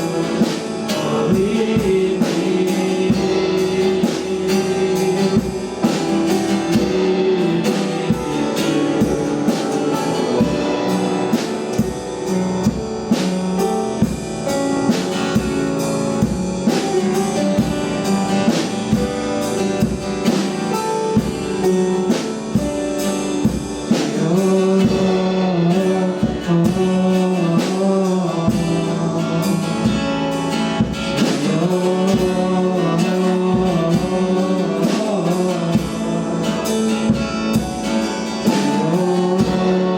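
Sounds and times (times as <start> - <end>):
person singing: 0.0 - 14.6, 23.8 - 39.9
worship band playing: 0.0 - 39.9.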